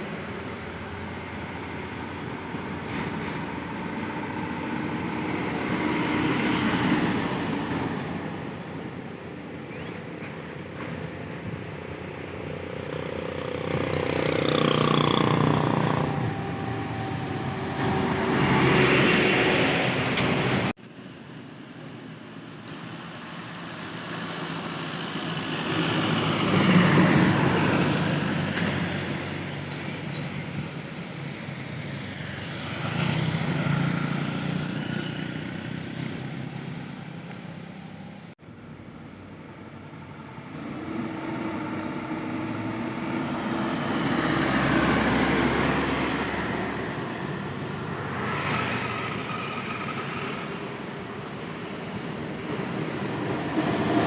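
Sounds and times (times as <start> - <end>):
trucks driving past: 0.0 - 54.0.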